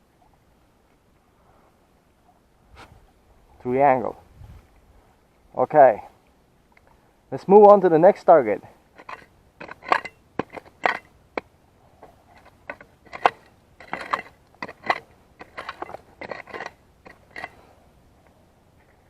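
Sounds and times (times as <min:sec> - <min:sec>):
hand digger scraping soil: 0:09.0 - 0:11.1, 0:12.3 - 0:17.6.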